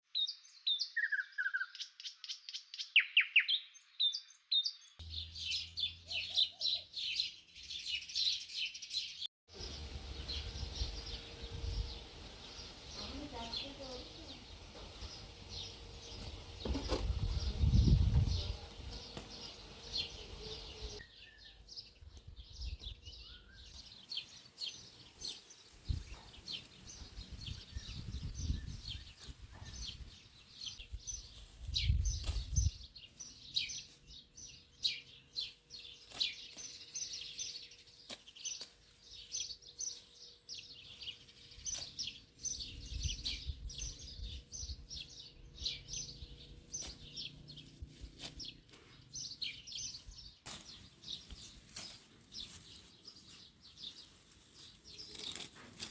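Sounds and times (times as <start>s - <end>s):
small birds chirping: 0.1s - 55.9s
low rumbles: 9.6s - 21.0s.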